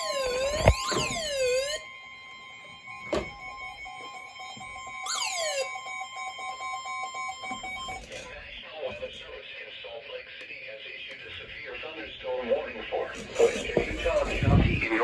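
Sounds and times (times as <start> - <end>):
two-tone electronic alert: 0.0 - 8.4.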